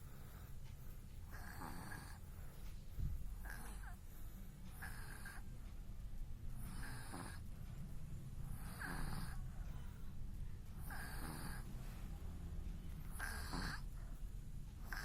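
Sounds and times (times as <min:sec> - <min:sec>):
baby snoring: 0:01.3 - 0:02.2, 0:03.4 - 0:04.0, 0:04.8 - 0:05.4, 0:06.7 - 0:07.4, 0:08.5 - 0:09.5, 0:10.8 - 0:11.7, 0:13.0 - 0:14.1, 0:14.8 - 0:15.0.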